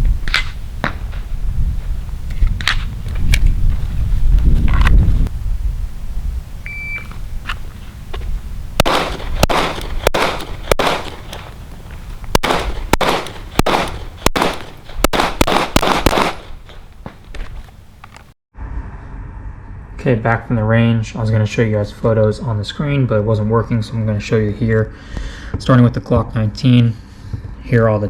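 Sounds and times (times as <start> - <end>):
shot timer beep: 6.7 - 7.1
pistol shots: 8.8 - 11.6, 12.3 - 17.2.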